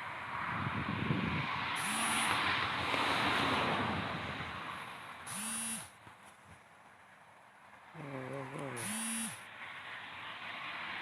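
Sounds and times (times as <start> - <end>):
wind buffeting microphone: 0.0 - 4.9
short electronic beeps: 1.8 - 2.4, 5.3 - 5.9, 8.8 - 9.4.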